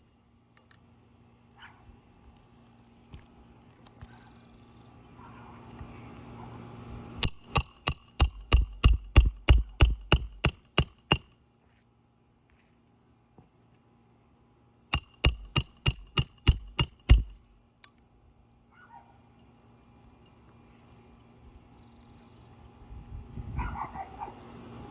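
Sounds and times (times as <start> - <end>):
hammer blows on metal: 15.0 - 17.5.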